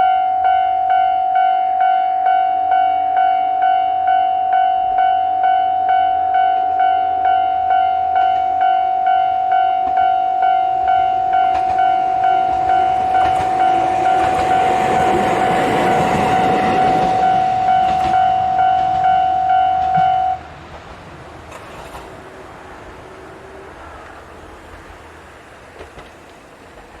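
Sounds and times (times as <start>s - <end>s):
level-crossing warning bell: 0.0s - 20.5s
diesel railcar passing: 0.0s - 27.0s.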